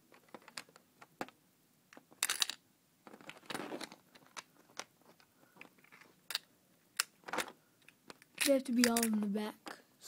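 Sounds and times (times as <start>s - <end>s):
plastic pieces rattling: 2.0s - 9.2s.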